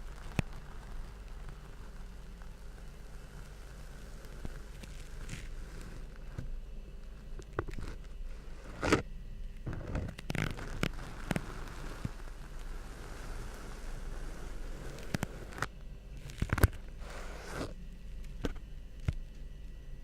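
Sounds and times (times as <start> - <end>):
sand crunching and scraping: 9.7 - 17.8.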